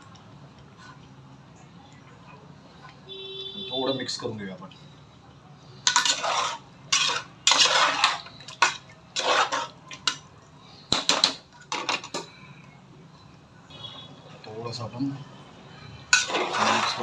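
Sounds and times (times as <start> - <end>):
spoon stirring thick gravy in pot: 5.7 - 10.3, 16.0 - 17.0.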